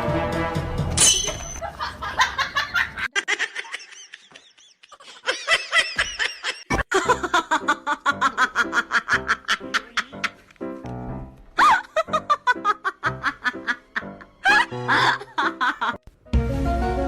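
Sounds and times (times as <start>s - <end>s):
high-pitched laughter: 1.6s - 10.4s.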